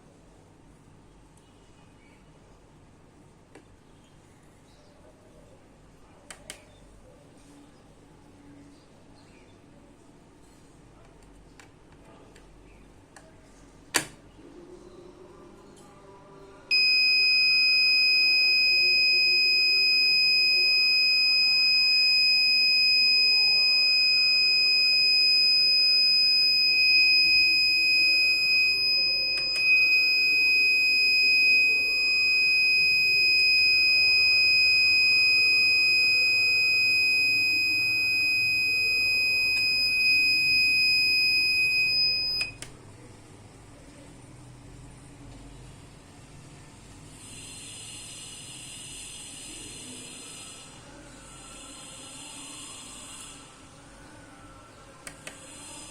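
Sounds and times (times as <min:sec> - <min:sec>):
high-pitched alarm buzzer: 0:16.7 - 0:42.5.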